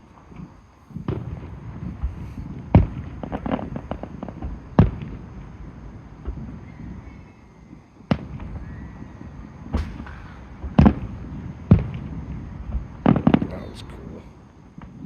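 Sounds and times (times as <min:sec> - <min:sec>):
fireworks booming: 0:00.0 - 0:15.0
faint thin whistle: 0:06.6 - 0:07.9, 0:08.5 - 0:09.3.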